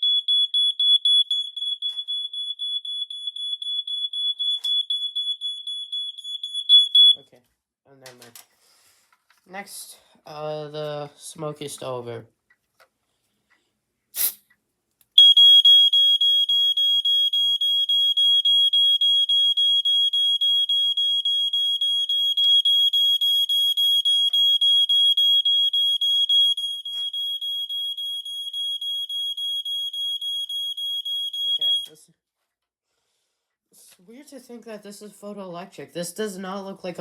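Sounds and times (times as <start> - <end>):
smoke alarm shrill pulsing tone: 0.0 - 7.2, 15.2 - 32.0
spray hiss: 14.2 - 14.4.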